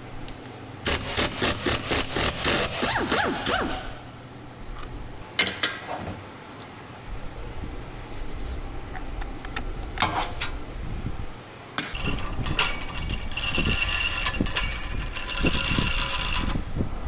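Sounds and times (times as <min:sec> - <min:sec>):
power tool high whine and rattle: 0:00.8 - 0:04.1.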